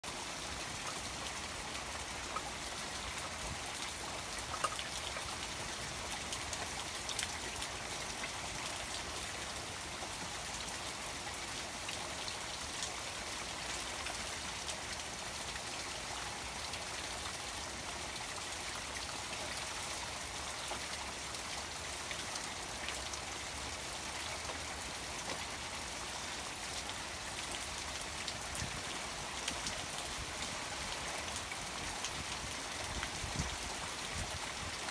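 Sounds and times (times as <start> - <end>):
rain falling on pond: 0.0 - 34.9
running water from waterfall: 0.0 - 34.9.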